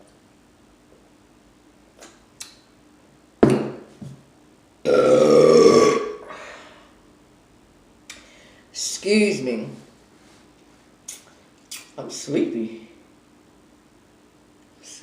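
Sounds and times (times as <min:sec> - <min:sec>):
woman burping: 0:04.8 - 0:06.4.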